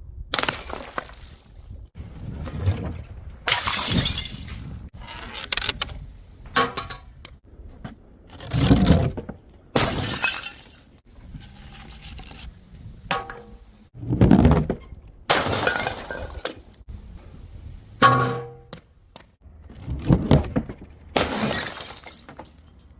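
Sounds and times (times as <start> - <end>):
glass bottles smashing: 3.5 - 4.9, 9.8 - 11.0, 15.3 - 16.6, 21.2 - 22.6.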